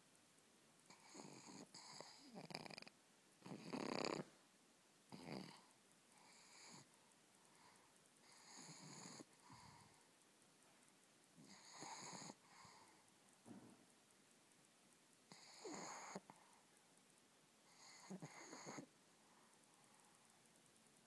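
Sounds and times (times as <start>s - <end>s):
dog snoring: 0.9s - 4.3s, 5.1s - 6.9s, 8.2s - 9.9s, 11.4s - 12.9s, 15.3s - 16.3s, 17.7s - 18.9s.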